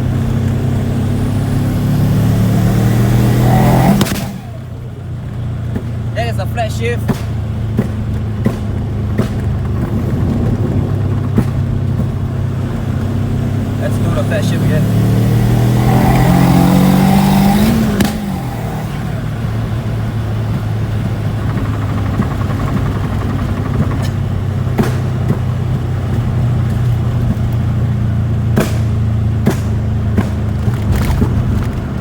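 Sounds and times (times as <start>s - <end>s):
car engine revving and droning: 0.0s - 32.0s
sharp snap as revs drop: 3.6s - 4.7s, 7.0s - 10.4s, 17.2s - 19.1s, 23.7s - 27.7s, 28.5s - 31.9s.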